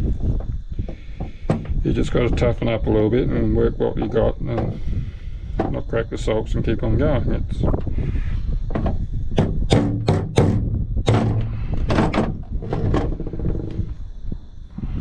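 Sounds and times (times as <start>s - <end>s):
sharp knocks and clunks: 0.3s - 1.8s, 3.9s - 4.8s, 5.5s - 5.9s, 8.7s - 14.0s.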